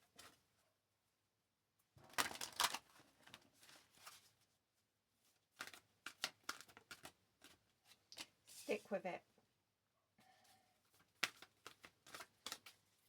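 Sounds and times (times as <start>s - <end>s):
cards rustling: 2.1s - 4.2s, 5.5s - 8.7s, 10.9s - 13.0s
cards snapping: 5.6s - 7.6s, 11.2s - 12.7s.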